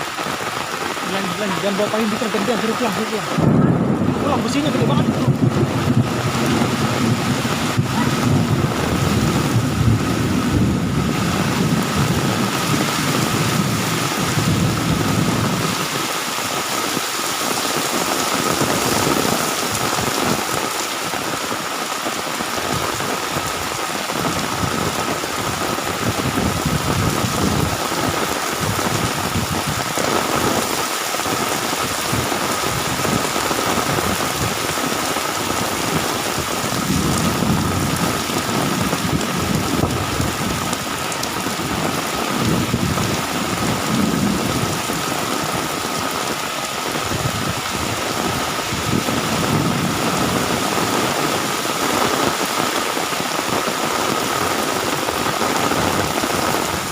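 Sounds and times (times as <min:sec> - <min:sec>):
heavy rain pouring: 0:00.0 - 0:56.9
low rumble: 0:03.3 - 0:12.2.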